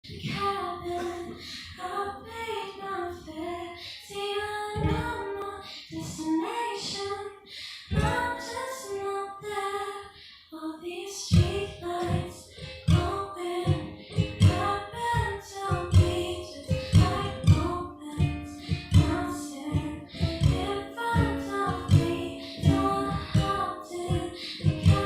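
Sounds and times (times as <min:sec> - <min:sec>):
girl singing slow melody: 0:00.0 - 0:25.0
deep low notes: 0:15.7 - 0:25.0.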